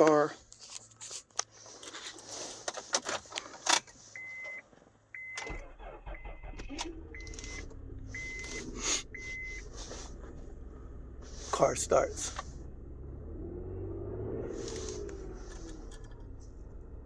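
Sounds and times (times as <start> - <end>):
car engine starting and idling: 1.4 - 17.0
dashboard warning chime beeping: 4.2 - 4.6, 5.2 - 10.0
key clicks in ignition: 6.4 - 9.6.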